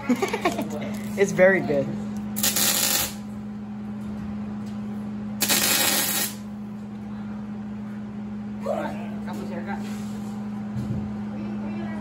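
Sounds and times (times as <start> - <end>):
steady low hum: 0.0 - 12.0
welder arc hissing: 2.4 - 3.2, 5.4 - 6.5.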